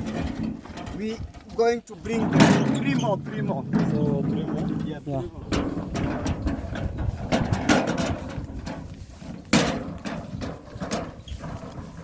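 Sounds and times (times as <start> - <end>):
wheelbarrows knocking: 0.0 - 12.0.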